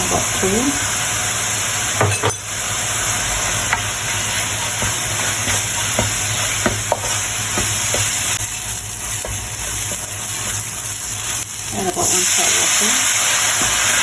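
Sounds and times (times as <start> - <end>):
spice paste sizzling in hot oil: 0.0 - 14.0
utensil clinking against pan: 2.0 - 2.5.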